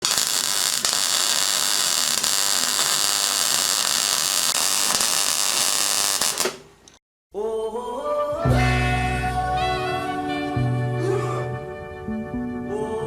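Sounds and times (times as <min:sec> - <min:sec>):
loud steady hissing: 0:00.0 - 0:06.7.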